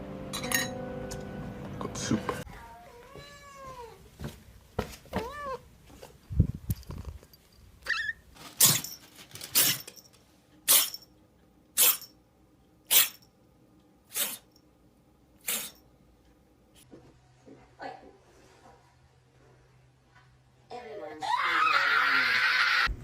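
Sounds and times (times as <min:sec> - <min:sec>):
cat meowing: 0:02.6 - 0:04.0, 0:05.2 - 0:05.6.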